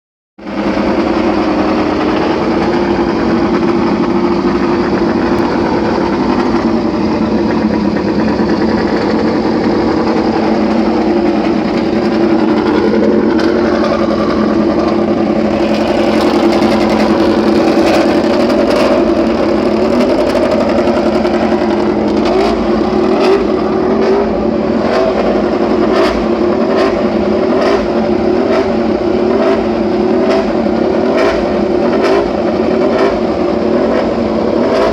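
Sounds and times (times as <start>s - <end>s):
motorcycle engine idling fast: 0.4s - 34.9s.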